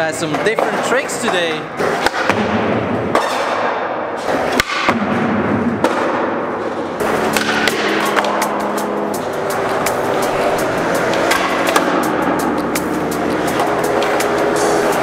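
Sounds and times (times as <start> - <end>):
skateboard clacks: 7.3 - 8.5.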